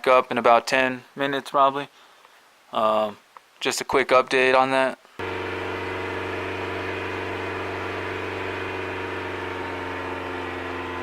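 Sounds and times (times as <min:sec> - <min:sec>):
car engine idling: 0:05.2 - 0:11.0.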